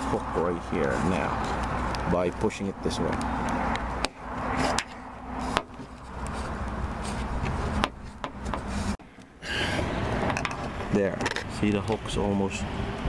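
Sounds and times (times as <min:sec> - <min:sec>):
rubbing and scraping inside door: 0:04.4 - 0:09.0.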